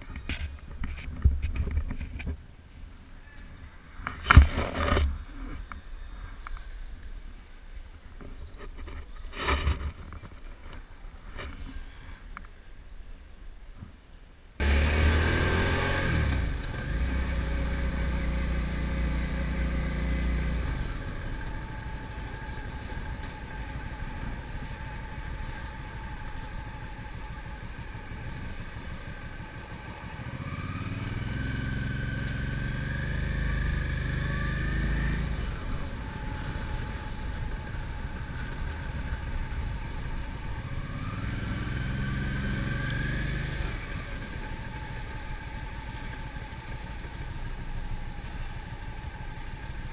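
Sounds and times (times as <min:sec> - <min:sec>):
gearbox whine: 0:00.0 - 0:49.9
motorcycle engine revving: 0:14.6 - 0:49.9.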